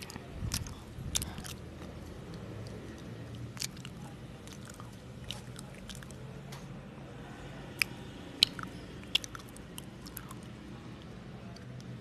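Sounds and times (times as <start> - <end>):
wet mouth sounds: 0.0 - 6.2, 7.8 - 10.6
chewing food: 0.0 - 6.3, 7.8 - 12.0
low steady hum: 0.0 - 12.0.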